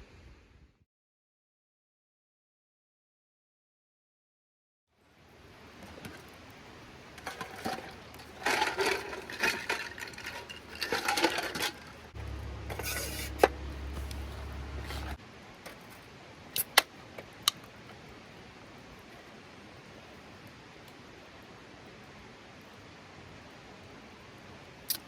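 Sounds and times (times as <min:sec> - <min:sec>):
rustling of handled objects: 0:05.7 - 0:18.1
low hum: 0:07.2 - 0:15.2.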